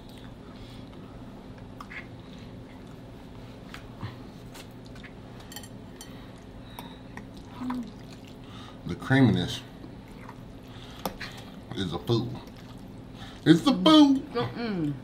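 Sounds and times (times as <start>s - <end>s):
person chewing food: 0.0s - 8.6s
steady low hum: 0.0s - 15.0s.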